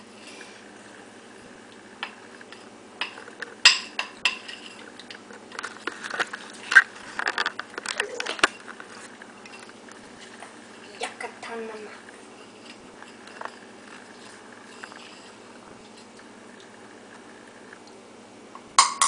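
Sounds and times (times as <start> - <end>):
spoon scraping and clinking on pan: 2.0 - 4.9.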